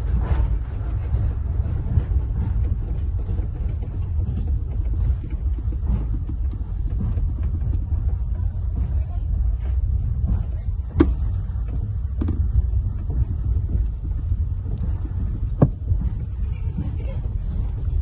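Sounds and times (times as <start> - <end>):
train rumbling: 0.0 - 18.0.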